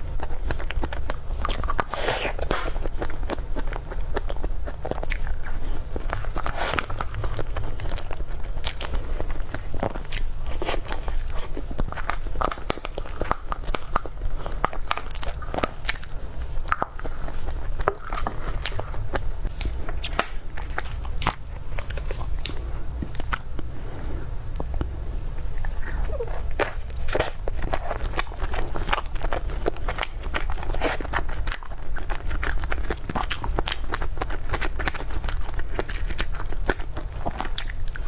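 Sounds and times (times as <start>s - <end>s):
crunchy chewing: 0.0s - 38.0s
steady low hum: 0.0s - 38.0s.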